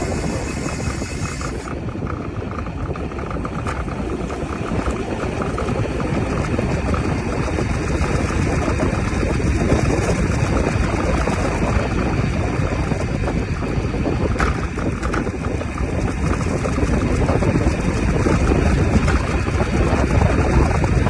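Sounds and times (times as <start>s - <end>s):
scooter wheels and wind rumble: 0.0s - 21.0s.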